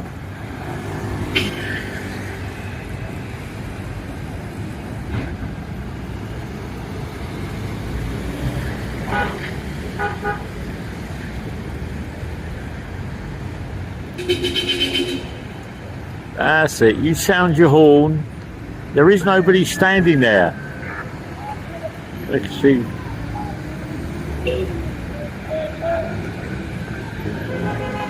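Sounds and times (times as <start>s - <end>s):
street traffic rumble: 0.0s - 28.0s
car horn beeps: 14.2s - 15.5s, 24.4s - 24.8s, 27.4s - 28.0s.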